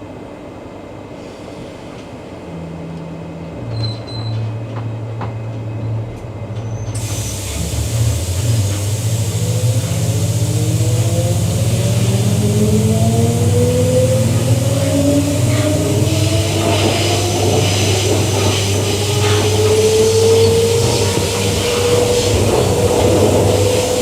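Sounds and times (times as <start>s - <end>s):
train low hum: 0.0s - 24.0s
train hiss: 1.1s - 2.4s, 6.9s - 24.0s
traction motor whine rising: 7.1s - 24.0s.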